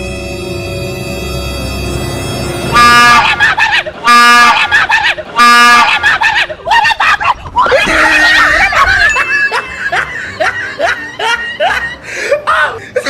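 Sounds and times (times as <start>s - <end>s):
train horn blasts: 0.0s - 3.4s, 4.1s - 4.6s
person screaming and shouting: 6.7s - 9.2s, 12.3s - 13.0s.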